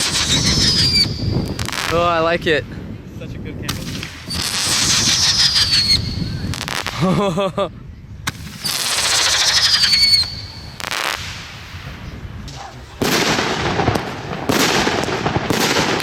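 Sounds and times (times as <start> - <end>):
firework whistle: 0.0 - 1.8, 3.9 - 6.9, 8.5 - 11.4
firework bangs: 0.0 - 2.3, 3.6 - 7.1, 8.2 - 16.0
fireworks crackling: 0.0 - 2.6, 3.6 - 7.2, 8.3 - 16.0.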